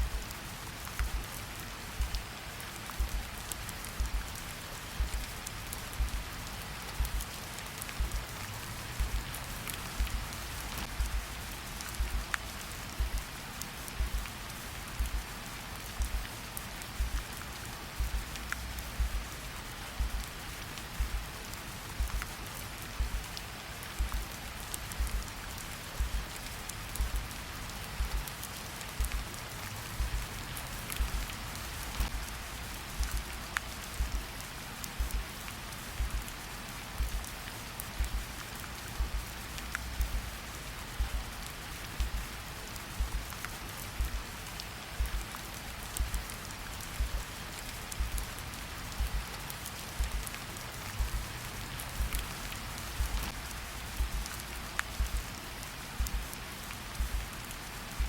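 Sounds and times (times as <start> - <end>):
low heartbeat thumping: 0.0 - 0.2, 1.0 - 1.3, 2.0 - 2.2, 3.0 - 3.3, 4.0 - 4.3, 5.0 - 5.3, 5.9 - 6.3, 7.0 - 7.3, 8.0 - 8.3, 9.0 - 9.3, 10.0 - 11.3, 12.0 - 12.3, 13.0 - 13.3, 14.0 - 14.2, 15.0 - 15.3, 16.0 - 16.2, 17.0 - 17.2, 18.0 - 18.3, 18.9 - 19.3, 20.0 - 20.3, 21.0 - 21.3, 22.0 - 22.3, 23.0 - 23.3, 24.0 - 24.2, 25.0 - 25.2, 26.0 - 26.3, 27.0 - 27.3, 28.0 - 28.3, 29.0 - 29.2, 30.0 - 30.2, 31.0 - 31.3, 32.0 - 32.2, 33.0 - 33.3, 34.0 - 34.3, 35.0 - 35.3, 36.0 - 36.3, 37.0 - 37.3, 38.0 - 38.3, 39.0 - 39.3, 40.0 - 40.4, 41.0 - 41.3, 42.0 - 42.3, 43.0 - 43.3, 44.0 - 44.3, 45.0 - 45.3, 46.0 - 46.3, 47.0 - 47.2, 48.0 - 48.3, 49.0 - 49.3, 50.0 - 50.3, 51.0 - 51.3, 52.0 - 52.3, 53.0 - 53.4, 54.0 - 54.4, 55.0 - 55.3, 56.0 - 56.3, 57.0 - 57.3
rain falling: 0.0 - 58.0.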